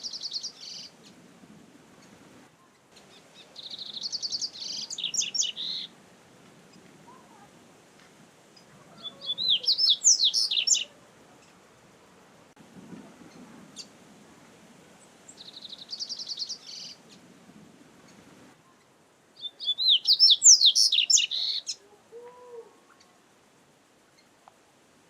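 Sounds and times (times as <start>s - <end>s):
bird singing trills: 0.0s - 0.9s, 3.0s - 5.9s, 8.9s - 10.9s, 15.3s - 17.0s, 19.4s - 21.8s.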